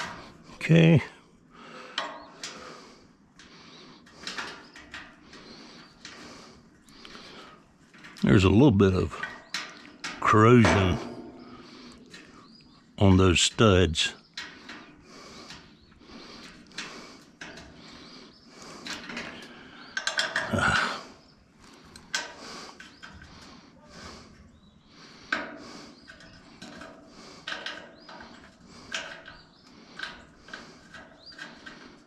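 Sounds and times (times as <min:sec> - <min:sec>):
loud metal clunk: 0:10.6 - 0:11.7.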